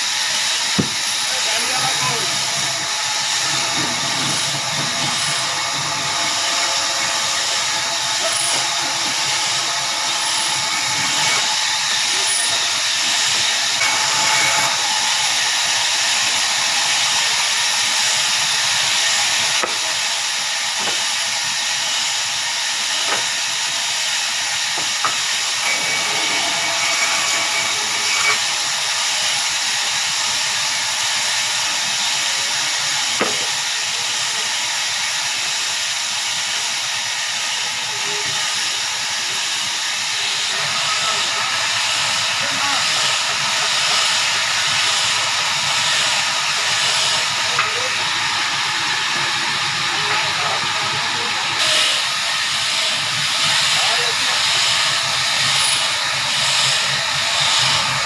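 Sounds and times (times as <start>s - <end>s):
sawmill saw hissing: 0.0s - 58.0s
sharp knocks: 0.8s - 1.0s.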